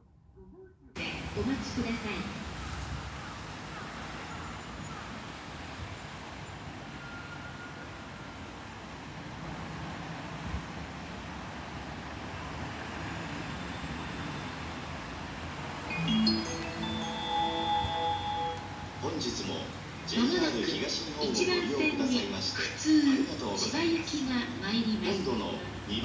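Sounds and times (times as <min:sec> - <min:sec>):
railway platform rumble: 0:00.9 - 0:26.0
rising electronic chime: 0:15.9 - 0:19.0.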